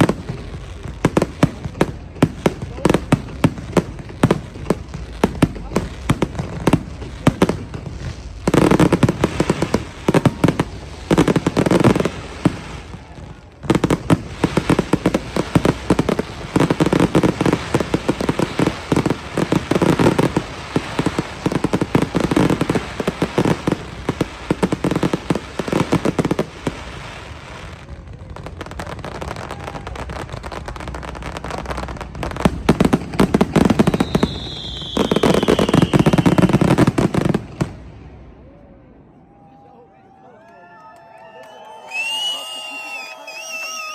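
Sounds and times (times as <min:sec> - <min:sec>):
fireworks crackling and banging: 0:00.0 - 0:38.6
firework whistle falling in pitch: 0:33.9 - 0:36.6, 0:41.2 - 0:43.9.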